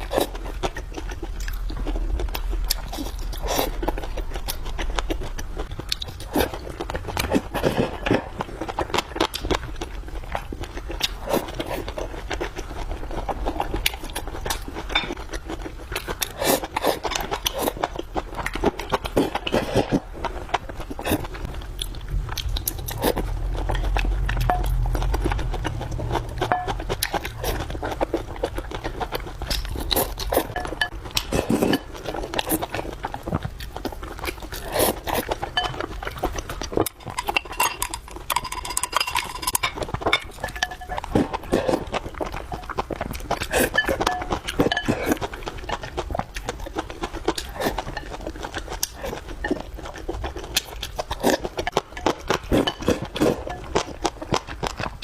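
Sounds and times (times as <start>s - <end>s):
chewing with crunching: 0.0s - 55.0s
low rumble: 21.3s - 31.1s.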